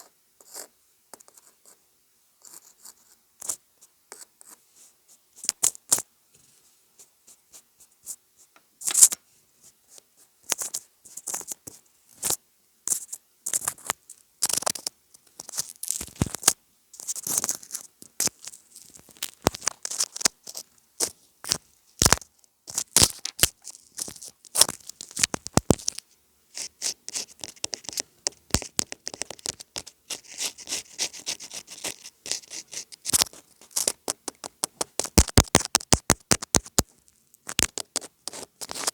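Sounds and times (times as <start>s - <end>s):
scratching on gadget: 12.9s - 38.9s
crisp tapping: 13.8s - 26.0s, 26.6s - 38.9s.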